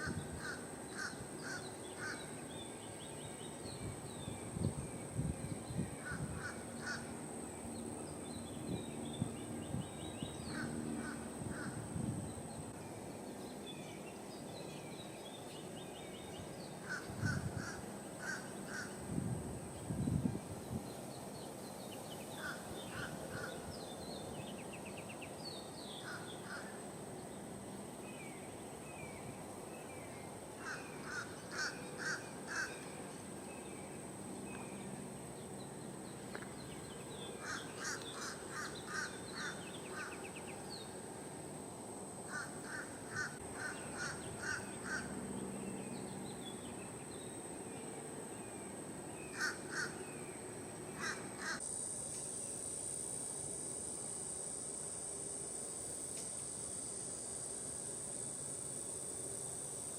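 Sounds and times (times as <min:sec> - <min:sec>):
bird harsh caw-like calls: 0:00.0 - 0:02.3, 0:06.0 - 0:07.2, 0:10.4 - 0:11.8, 0:16.8 - 0:19.0, 0:22.4 - 0:23.7, 0:26.0 - 0:26.8, 0:30.6 - 0:32.9, 0:37.4 - 0:40.4, 0:42.3 - 0:45.2, 0:49.2 - 0:50.1, 0:50.9 - 0:51.6.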